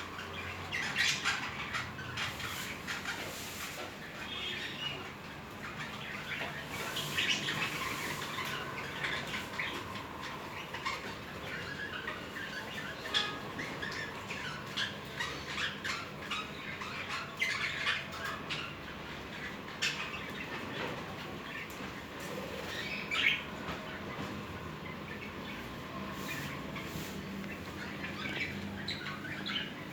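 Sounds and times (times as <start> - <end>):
budgerigars chattering: 0.0 - 24.2, 24.8 - 29.9.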